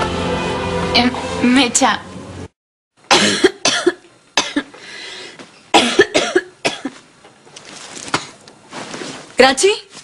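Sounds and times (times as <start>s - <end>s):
person coughing: 3.1s - 4.8s, 5.7s - 7.0s.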